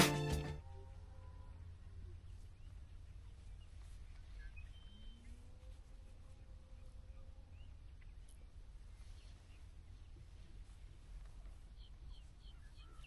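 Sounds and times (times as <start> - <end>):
distant bird chirps and whistles: 4.2 - 5.4, 11.8 - 13.0.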